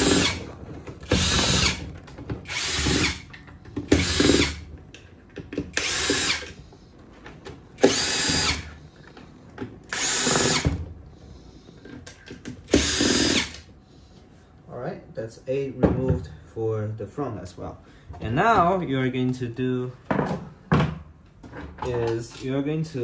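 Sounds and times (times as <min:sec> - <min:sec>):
power drill whirring: 0:00.0 - 0:04.7, 0:05.7 - 0:06.6, 0:07.8 - 0:08.8, 0:09.9 - 0:10.8, 0:12.7 - 0:13.7.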